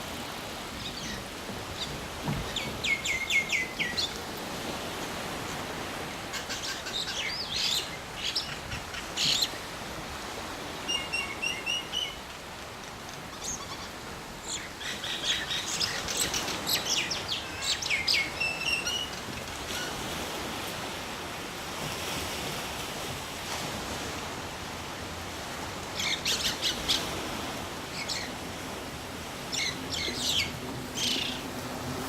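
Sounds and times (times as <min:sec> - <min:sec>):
myna birds calling: 0:05.2 - 0:09.7, 0:10.8 - 0:20.1, 0:25.9 - 0:28.7, 0:29.3 - 0:31.6.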